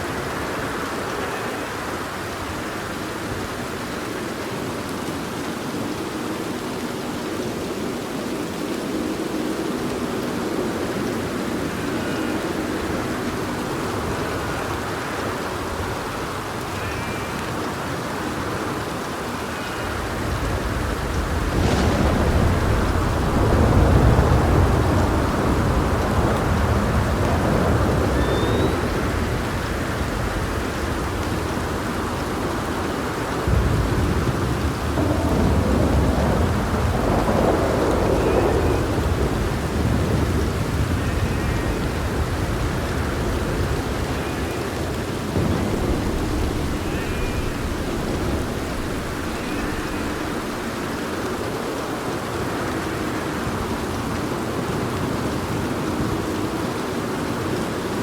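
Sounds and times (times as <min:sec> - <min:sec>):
heavy rain: 0:00.0 - 0:58.0
rolling thunder: 0:20.0 - 0:32.1, 0:33.4 - 0:52.2.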